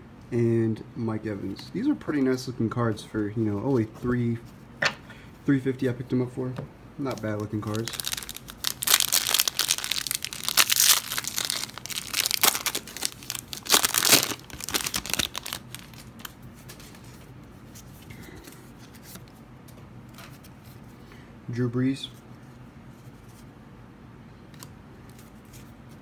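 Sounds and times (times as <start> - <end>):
plastic wrapper tearing and crinkling: 7.2 - 16.4.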